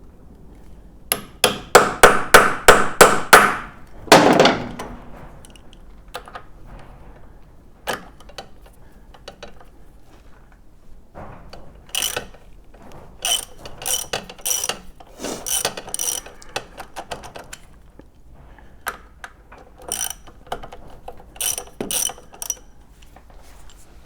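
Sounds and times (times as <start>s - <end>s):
socket ratchet clicking: 12.0s - 12.3s, 13.2s - 17.4s, 19.8s - 20.4s, 21.4s - 22.7s.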